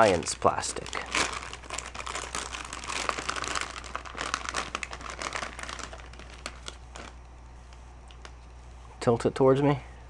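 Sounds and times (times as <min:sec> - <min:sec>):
plastic packaging crinkling: 0:00.0 - 0:07.3.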